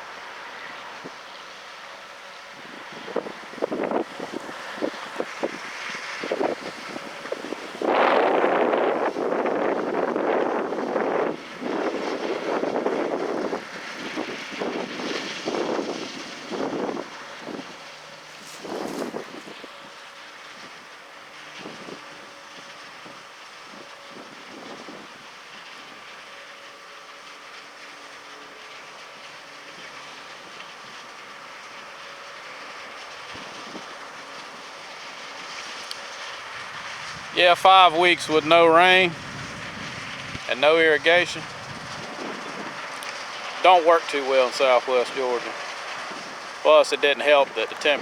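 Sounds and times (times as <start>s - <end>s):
faint harvesting machinery hum: 0.0s - 48.0s
wind buffeting microphone: 2.5s - 20.0s, 35.4s - 48.0s.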